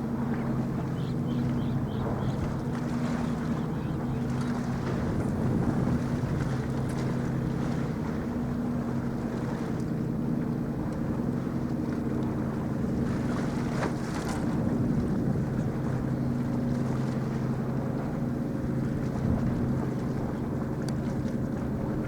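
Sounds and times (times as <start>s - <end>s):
rushing wind: 0.0s - 7.6s
ship diesel engine droning: 0.0s - 13.8s
water noise: 0.0s - 22.0s.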